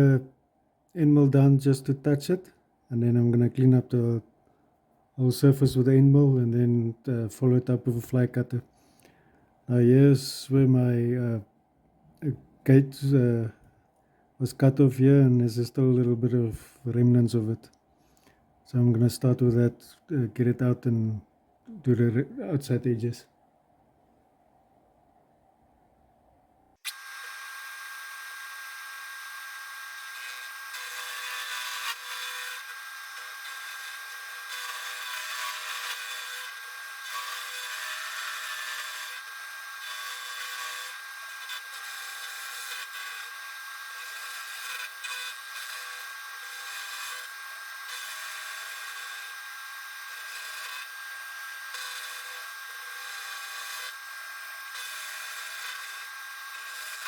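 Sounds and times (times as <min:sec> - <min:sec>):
milling machine cutting metal: 0:26.9 - 0:57.0.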